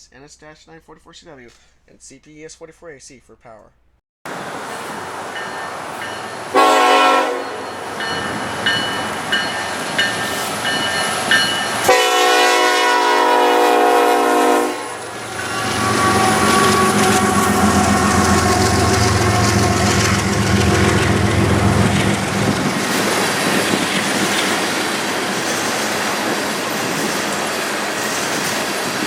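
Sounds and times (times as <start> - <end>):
train rumble and wheel clatter: 4.3 - 29.0
short ringing notes: 5.4 - 12.9
locomotive horn blasts: 5.9 - 8.0, 11.8 - 22.4.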